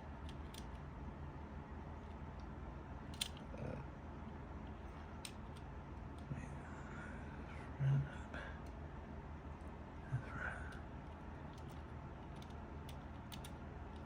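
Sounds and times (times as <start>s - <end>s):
small plastic parts clicking: 0.2s - 0.9s, 3.1s - 3.5s, 4.6s - 6.3s, 10.7s - 14.0s.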